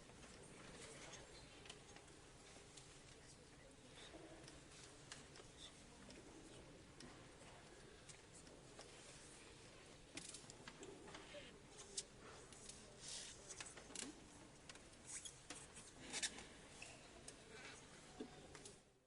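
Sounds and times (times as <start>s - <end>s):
crowd rustling and shuffling: 0.0s - 19.0s
small clicks and knocks: 10.1s - 11.2s.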